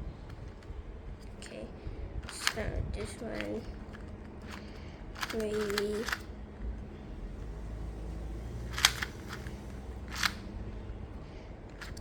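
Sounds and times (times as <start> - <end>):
puzzle cube layers clicking: 2.2 - 4.6, 5.2 - 6.3, 8.6 - 10.5
sharp plastic clacks: 2.2 - 6.3, 8.7 - 10.5, 11.7 - 12.0.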